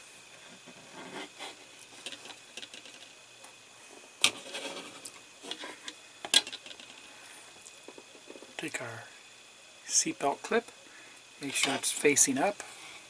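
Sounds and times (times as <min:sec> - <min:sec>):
model parts clicking and rustling: 0:02.0 - 0:03.2, 0:04.2 - 0:07.0.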